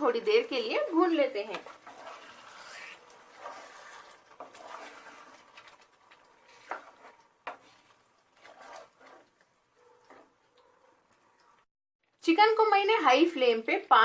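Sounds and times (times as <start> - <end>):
chicken frying: 0.0 - 9.7
spatula scraping in a pan: 0.0 - 10.5.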